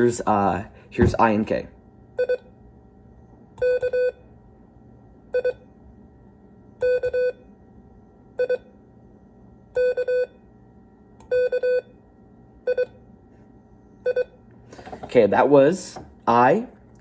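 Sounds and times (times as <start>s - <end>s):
morse code beeps: 3.6s - 4.2s, 5.4s - 5.6s, 6.8s - 7.4s, 9.8s - 10.4s, 11.3s - 11.9s, 12.7s - 13.0s, 14.0s - 14.4s.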